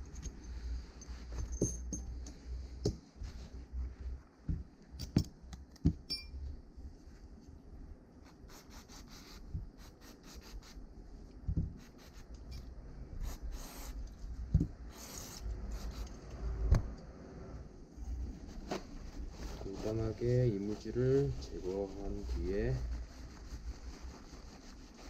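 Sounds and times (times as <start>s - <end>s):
metallic ring: 0.0s - 2.2s, 6.1s - 6.4s.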